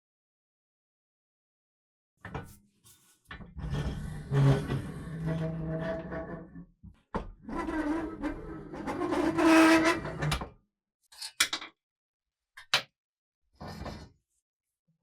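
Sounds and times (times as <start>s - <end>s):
metal scraping with squeak: 7.5s - 10.2s.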